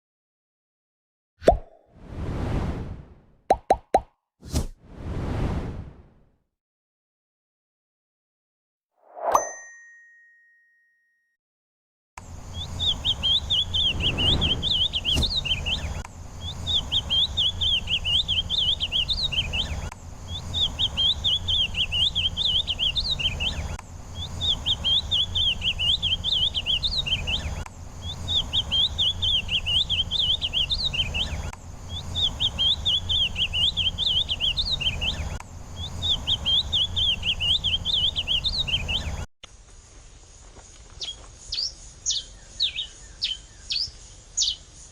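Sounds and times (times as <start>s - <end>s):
songbird warbling: 12.5s - 39.2s, 41.0s - 44.7s.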